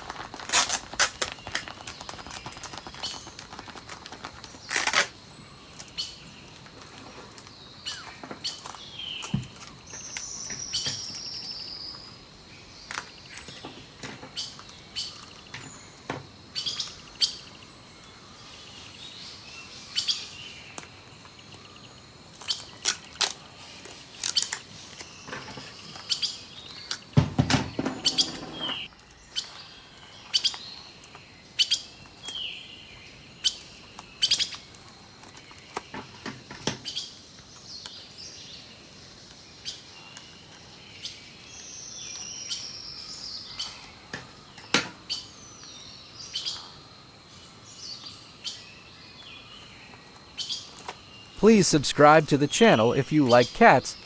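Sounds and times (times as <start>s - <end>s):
rustling: 0.0s - 5.0s
small birds chirping: 0.5s - 36.0s, 36.6s - 46.8s, 47.4s - 51.4s.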